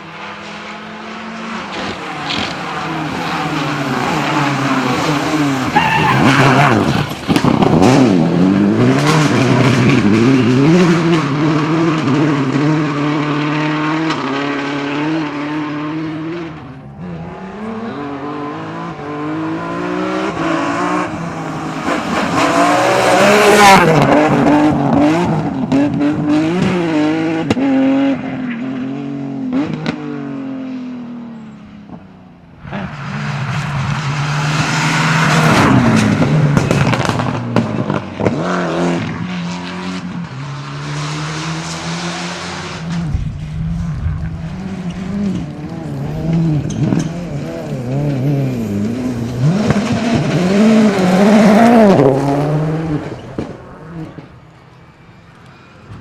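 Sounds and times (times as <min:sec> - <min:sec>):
rally car engines revving: 0:00.0 - 0:56.0
tyre noise: 0:01.7 - 0:11.2.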